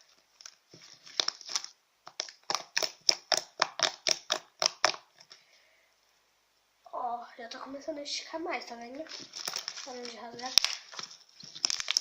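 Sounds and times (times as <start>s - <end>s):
slime clicking and popping: 1.2s - 5.1s.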